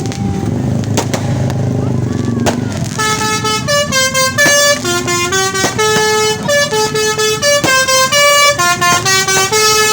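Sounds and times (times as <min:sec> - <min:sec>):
sharp cracks: 0:00.0 - 0:06.5
multi-tone air horn tune: 0:02.8 - 0:09.9.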